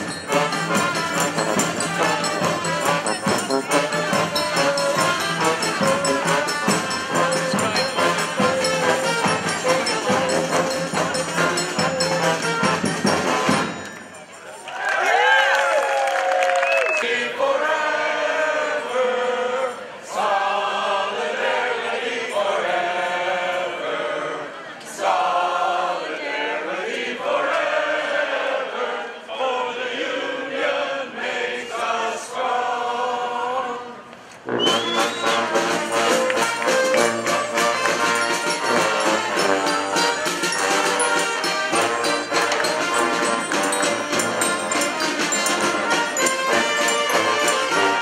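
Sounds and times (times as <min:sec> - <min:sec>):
group of voices singing: 0:00.0 - 0:13.6, 0:17.0 - 0:48.0
brass band playing loudly: 0:00.0 - 0:13.9, 0:34.5 - 0:48.0.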